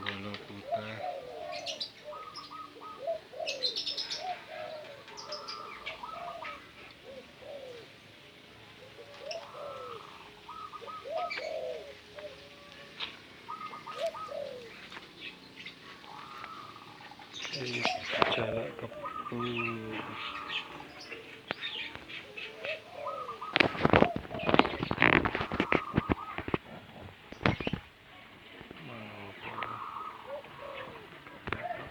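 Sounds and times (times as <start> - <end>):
bird calling runs of notes: 0.0 - 31.9
birds cooing: 0.0 - 31.9.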